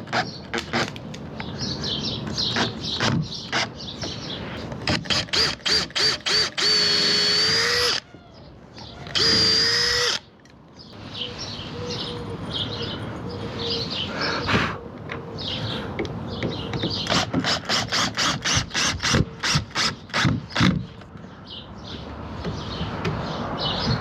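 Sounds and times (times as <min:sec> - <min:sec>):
power drill whining: 0:04.9 - 0:08.1, 0:09.0 - 0:10.2.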